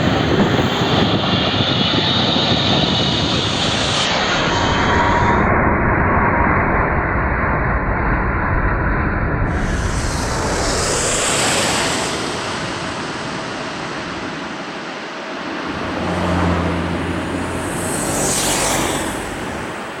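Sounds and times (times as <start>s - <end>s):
jet aircraft passing: 9.5s - 20.0s.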